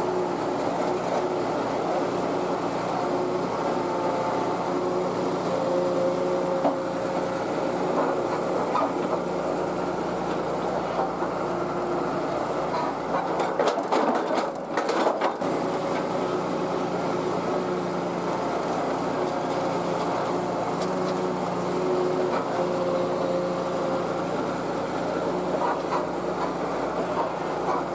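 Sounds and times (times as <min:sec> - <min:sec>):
excavator diesel engine running: 0:00.0 - 0:27.9
sharp knocks and clatter: 0:13.1 - 0:16.1.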